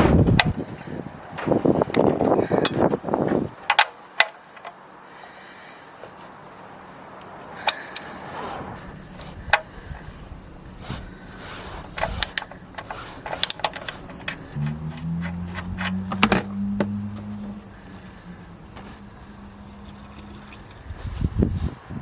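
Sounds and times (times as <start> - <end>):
metallic clicks and knocks of spanner: 3.6 - 4.8, 11.9 - 17.3
steady low hum: 4.5 - 22.0.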